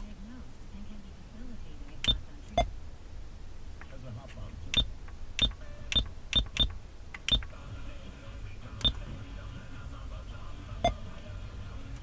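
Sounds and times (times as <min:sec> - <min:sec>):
car stereo button click-beeps: 0:02.0 - 0:02.7, 0:04.7 - 0:07.5, 0:08.8 - 0:09.0, 0:10.8 - 0:11.0.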